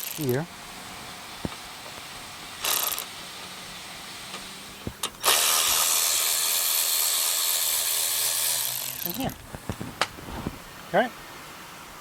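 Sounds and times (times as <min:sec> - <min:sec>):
hand ratchet clicking: 0:00.0 - 0:00.2, 0:02.6 - 0:03.1, 0:05.1 - 0:09.4.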